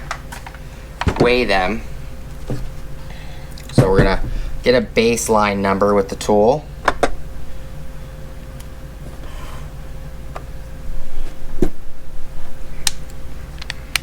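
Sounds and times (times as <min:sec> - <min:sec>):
steady low hum: 0:00.0 - 0:14.0
dull knock: 0:03.8 - 0:04.6.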